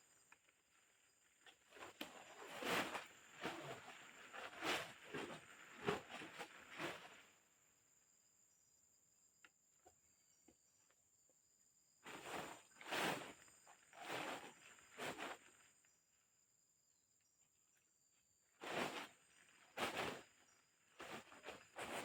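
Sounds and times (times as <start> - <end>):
faint high insect drone: 7.3 - 21.8
rustling crunches in undergrowth: 12.1 - 15.7, 18.6 - 22.0.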